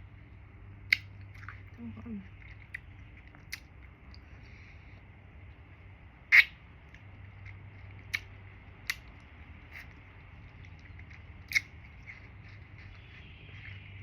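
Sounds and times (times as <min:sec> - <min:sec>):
wet mouth smacks: 0:00.8 - 0:01.7, 0:02.4 - 0:04.2, 0:06.3 - 0:13.0.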